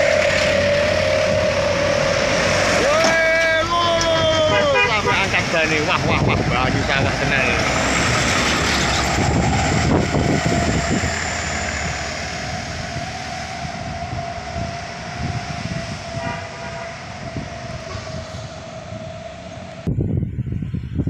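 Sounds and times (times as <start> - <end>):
heavy vehicle driving past: 0.0 - 19.9.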